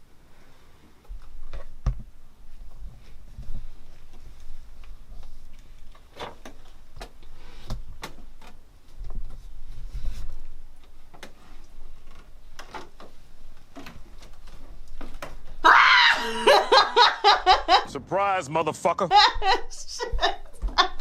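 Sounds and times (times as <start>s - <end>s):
quiet creeping footsteps: 17.8s - 21.0s.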